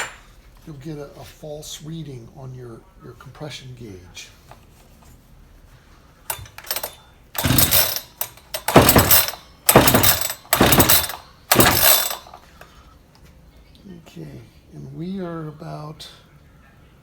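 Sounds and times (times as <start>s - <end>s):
chainsaw recoil starter pulls: 6.3s - 12.6s
engine cranking over: 6.3s - 12.6s.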